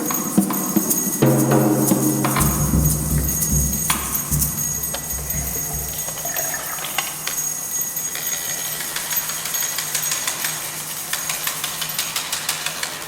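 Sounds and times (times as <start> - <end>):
light percussion clicks and rattles: 0.0 - 13.0
low drum beats: 1.2 - 6.6.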